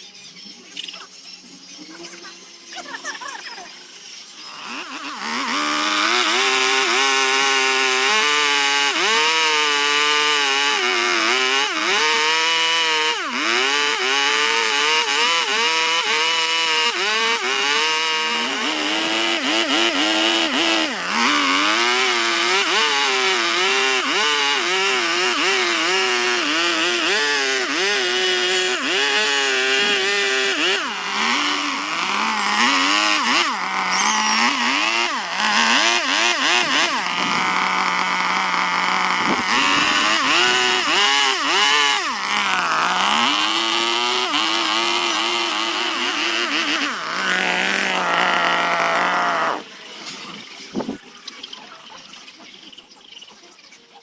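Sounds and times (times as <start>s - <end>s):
power carving tool cutting wood: 4.2s - 49.7s.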